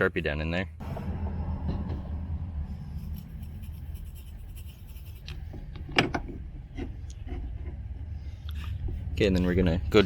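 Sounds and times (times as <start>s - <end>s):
marker scratching on metal: 2.7s - 5.8s.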